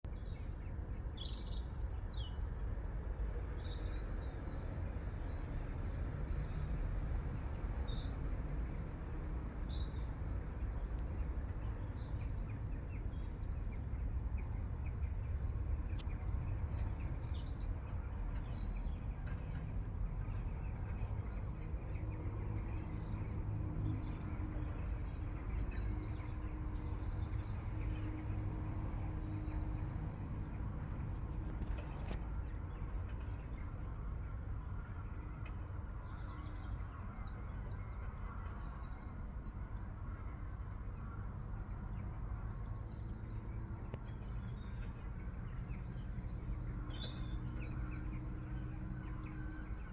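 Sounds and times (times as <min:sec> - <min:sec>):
low background rumble: 0:05.0 - 0:49.9
birds chirping: 0:29.0 - 0:49.9.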